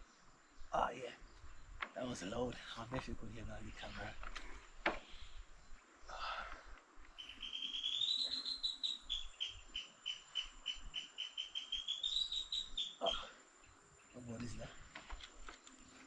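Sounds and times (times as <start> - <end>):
bird calling rapid trill: 7.2 - 13.3.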